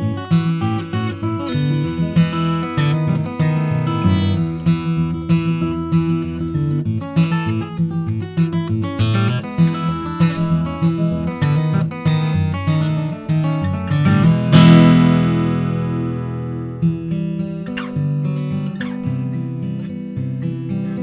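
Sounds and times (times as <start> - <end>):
acoustic guitar notes and chords: 0.0 - 21.0
guitar chord ringing: 13.4 - 19.6.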